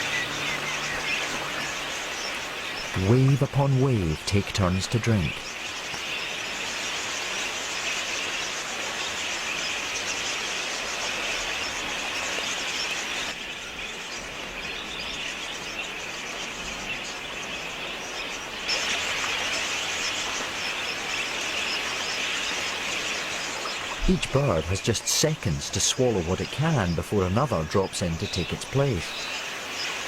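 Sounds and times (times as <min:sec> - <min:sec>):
budgerigars chattering: 0:00.0 - 0:07.4, 0:16.8 - 0:30.0.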